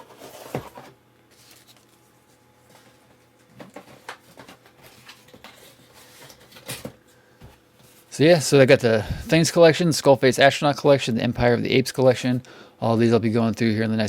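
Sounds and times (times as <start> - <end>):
packaging rustles: 0.0 - 7.1.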